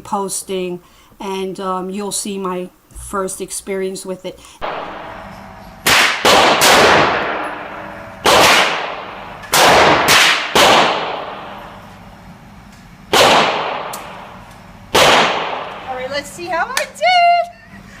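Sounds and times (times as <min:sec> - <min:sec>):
rifle shots with echo: 0:04.6 - 0:11.8, 0:13.1 - 0:15.9.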